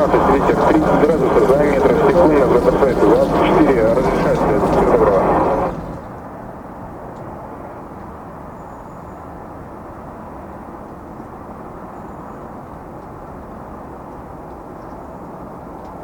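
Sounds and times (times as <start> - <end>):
jet engines rumbling: 0.0 - 6.2.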